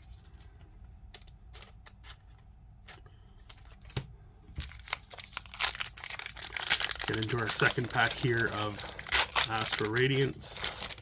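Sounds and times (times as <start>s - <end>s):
cards and packaging rustling: 1.1s - 11.0s
foil wrapper crinkling and tearing: 4.6s - 11.0s.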